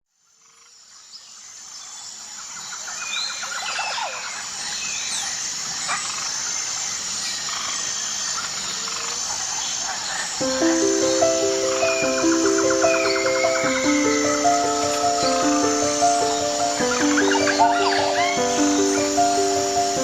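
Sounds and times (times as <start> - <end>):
high insect drone: 4.3 - 20.0
birds chirping: 10.4 - 20.0.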